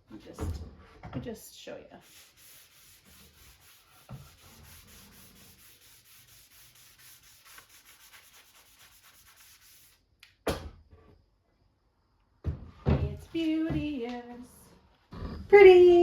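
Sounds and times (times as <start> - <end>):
rag rubbing on wood: 2.0 - 10.0.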